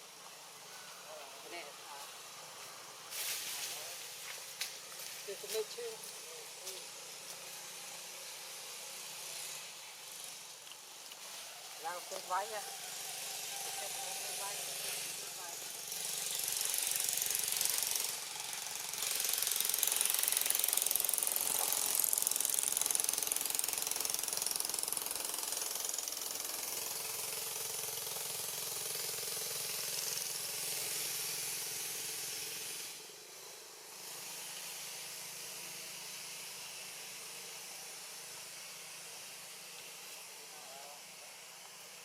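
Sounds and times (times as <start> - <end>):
high-pitched hissing drone: 11.3 - 18.6, 29.8 - 42.0.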